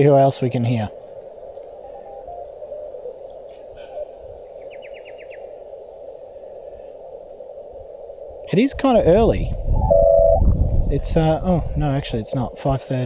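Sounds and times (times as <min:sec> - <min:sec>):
faint short morse tone: 0:09.8 - 0:10.5
radio band noise: 0:09.8 - 0:10.6.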